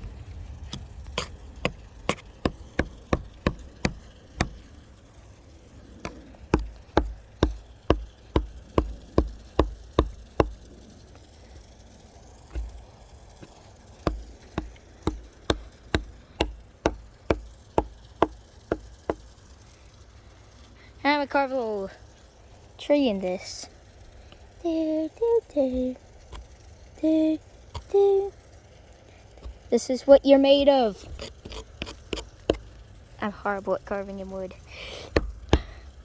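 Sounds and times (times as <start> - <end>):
screwdriver knocking into wood: 0.7 - 4.6, 6.1 - 10.6, 13.4 - 19.2, 35.1 - 35.7.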